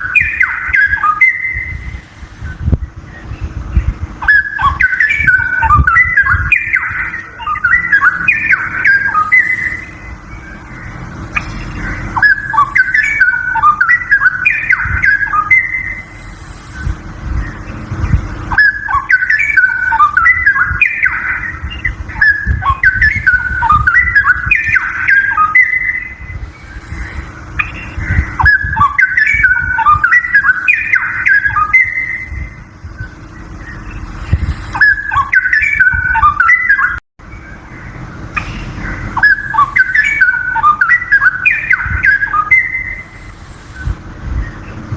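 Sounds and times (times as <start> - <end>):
bird singing warbled phrases: 0.0 - 44.9
steady low hum: 0.0 - 44.9.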